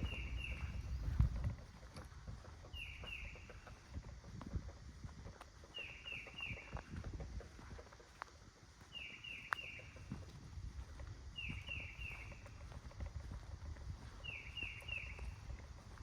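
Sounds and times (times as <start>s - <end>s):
songbird whistling: 0.0s - 1.0s
soft footsteps: 0.0s - 16.0s.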